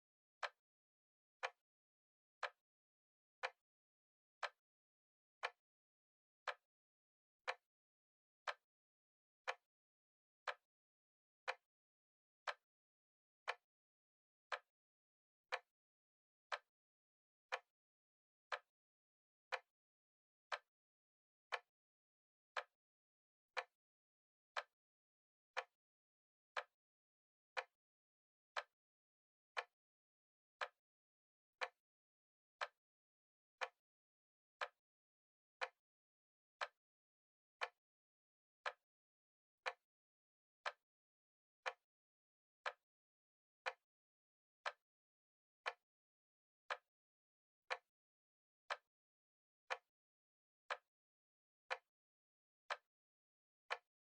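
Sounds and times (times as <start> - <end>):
timer ticking: 53.7 - 54.0.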